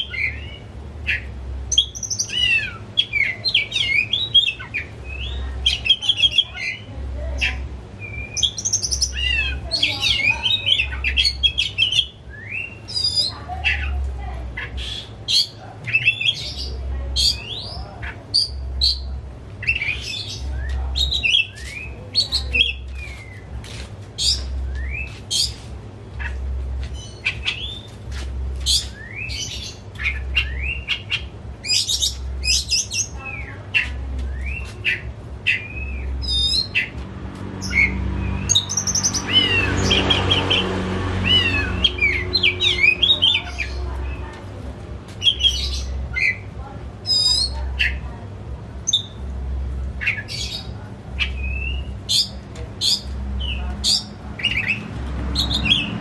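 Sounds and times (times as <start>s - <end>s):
bird singing whistles and chirps: 8.0s - 13.3s, 28.7s - 33.1s.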